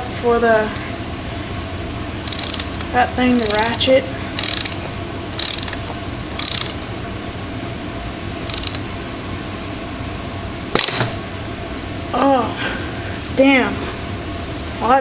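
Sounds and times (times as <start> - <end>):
ratchet wrench clicking: 2.3 - 2.8, 3.4 - 4.8, 5.4 - 6.9, 8.5 - 8.9.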